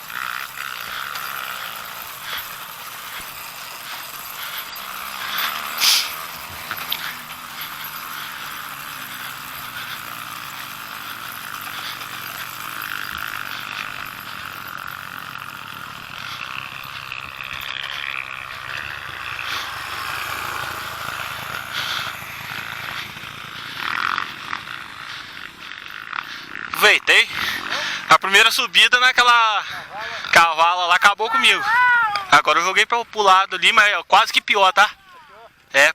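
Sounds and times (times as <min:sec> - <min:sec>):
motorcycle engine idling low: 0:00.0 - 0:26.7.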